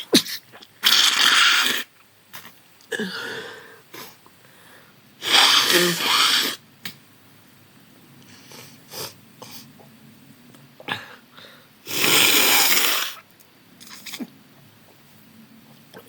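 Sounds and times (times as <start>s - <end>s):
person sneezing: 5.2s - 6.6s
person sniffing: 5.2s - 6.6s, 8.3s - 9.7s, 10.9s - 13.2s.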